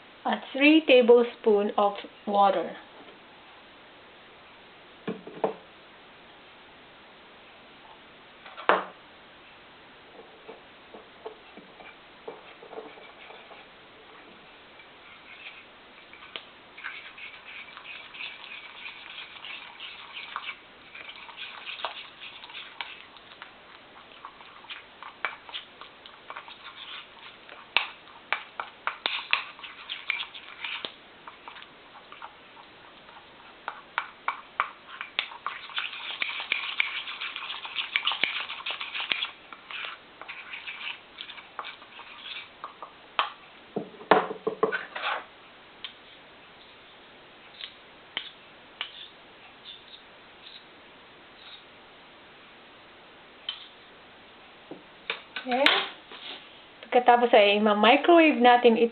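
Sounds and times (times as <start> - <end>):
utensil scraping a bowl: 10.2 - 42.9, 44.7 - 45.3, 47.5 - 50.7, 51.4 - 51.7, 53.5 - 53.8.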